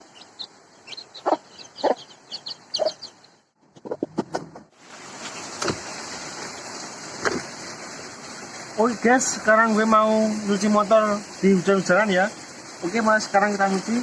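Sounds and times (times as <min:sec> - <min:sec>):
bird calls: 0:00.0 - 0:03.5
high chirps: 0:00.0 - 0:03.5
steady rushing hiss: 0:04.8 - 0:14.0.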